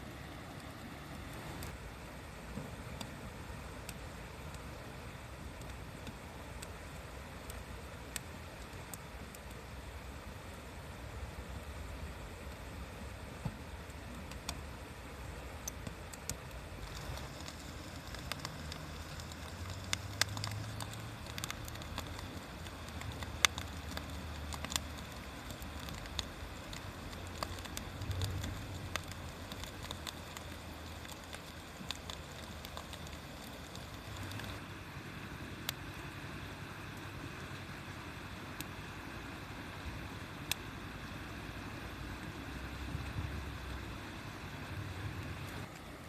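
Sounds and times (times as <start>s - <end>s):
steady low rumble: 0.0s - 45.7s
bonfire crackling: 0.0s - 46.0s
sharp pops and snaps: 5.6s - 9.6s, 13.4s - 14.7s, 15.3s - 34.6s, 40.3s - 41.2s.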